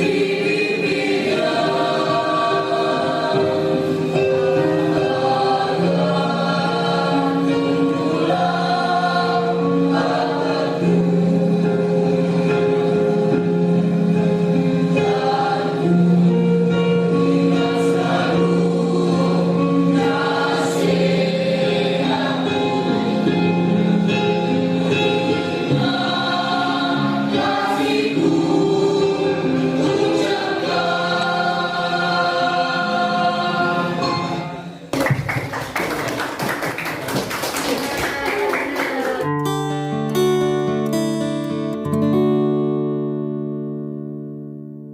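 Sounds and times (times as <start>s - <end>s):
choir singing in parts: 0.0s - 34.9s
guitar strumming: 39.2s - 44.9s.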